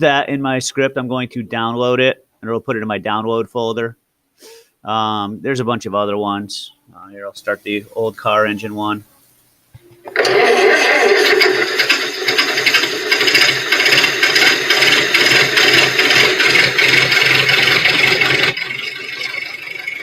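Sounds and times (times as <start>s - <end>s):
old car engine turning over: 10.0s - 20.0s.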